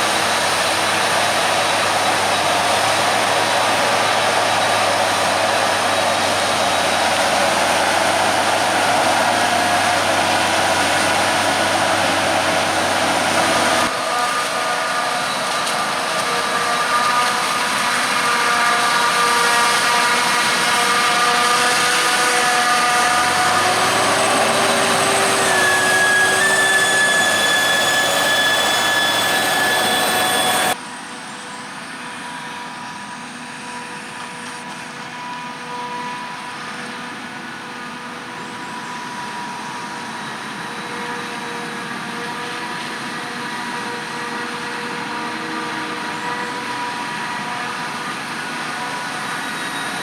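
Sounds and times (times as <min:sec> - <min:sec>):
diesel farm machinery running: 0:00.0 - 0:30.8
high whining tones: 0:00.0 - 0:30.8.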